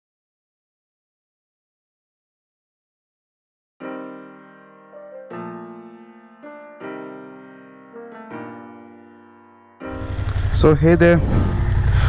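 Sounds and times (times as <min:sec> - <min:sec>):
soft piano chords: 0:03.8 - 0:12.0.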